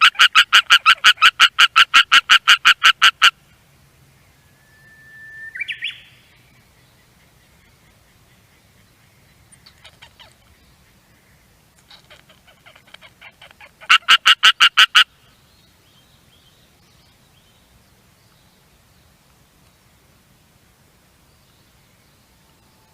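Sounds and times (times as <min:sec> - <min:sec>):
tree frog calling: 0:00.0 - 0:03.6, 0:04.8 - 0:15.3.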